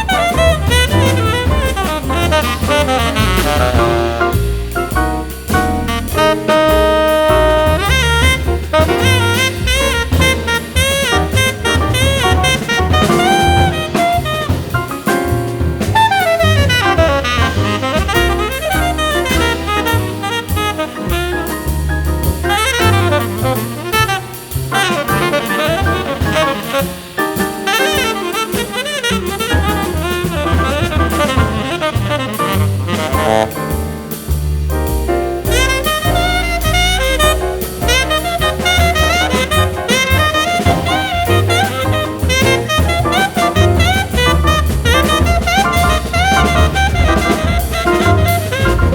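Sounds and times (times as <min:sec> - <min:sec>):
jazz with saxophone melody: 0:00.0 - 0:48.9.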